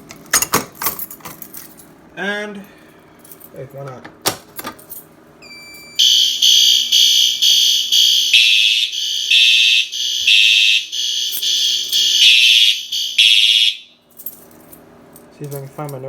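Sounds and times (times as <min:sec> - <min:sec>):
fire alarm horn pulsing: 0:05.4 - 0:14.0
fire alarm horn three-blast pattern: 0:05.4 - 0:14.0.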